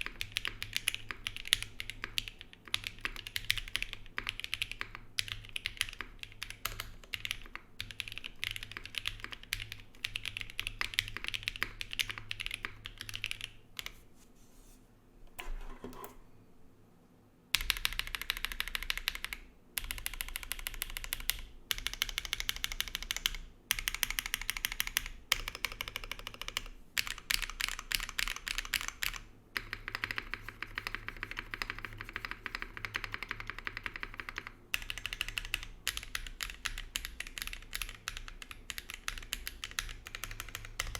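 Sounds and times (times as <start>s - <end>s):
mechanical keyboard typing: 0.0s - 14.0s, 17.6s - 40.9s.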